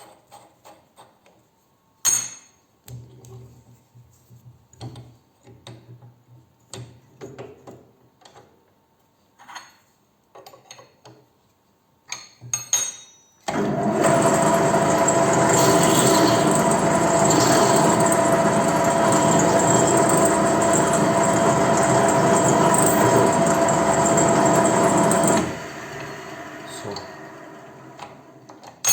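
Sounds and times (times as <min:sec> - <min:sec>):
motor whirring: 0:13.5 - 0:28.4.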